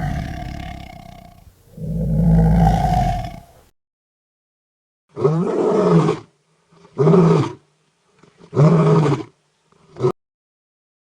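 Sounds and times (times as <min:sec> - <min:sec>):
big cat roaring: 0:00.0 - 0:03.6.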